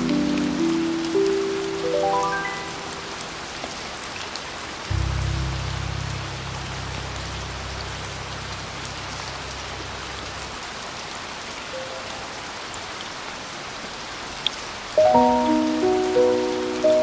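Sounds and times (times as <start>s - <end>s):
steady rain falling: 0.0s - 17.0s
low held musical note: 4.9s - 10.5s.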